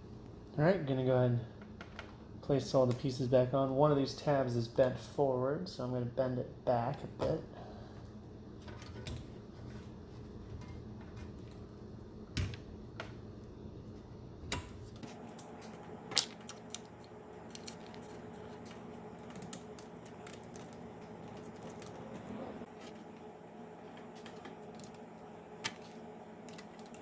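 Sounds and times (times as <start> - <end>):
low steady hum: 0.0 - 27.0
small laptop parts clicking: 16.1 - 22.0.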